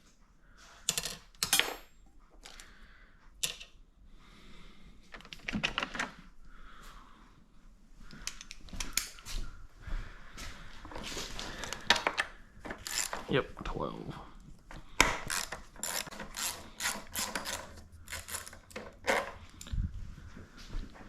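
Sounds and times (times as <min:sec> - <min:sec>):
hand tools clicking on metal: 0:11.7 - 0:13.4, 0:14.7 - 0:19.7.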